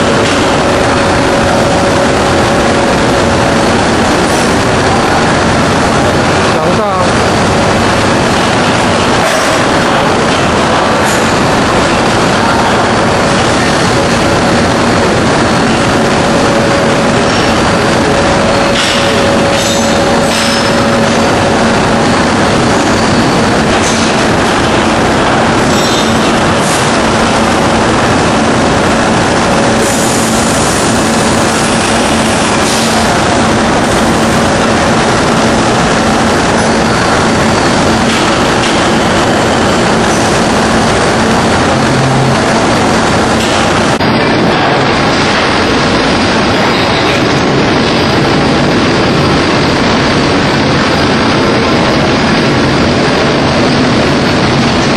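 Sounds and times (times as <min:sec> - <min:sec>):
machine noise with low hum: 0:00.0 - 0:54.9
machine hiss: 0:29.8 - 0:34.3.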